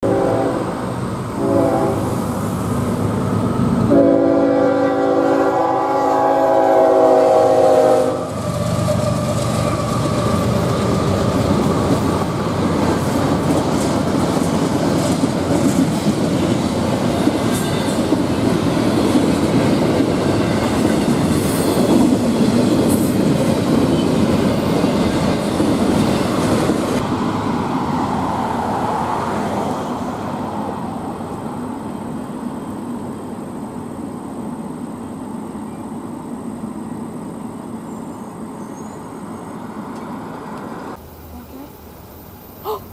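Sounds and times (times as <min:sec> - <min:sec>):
locomotive horn: 0:00.0 - 0:02.3, 0:03.9 - 0:08.4
train wheels rumbling on rails: 0:00.0 - 0:41.0.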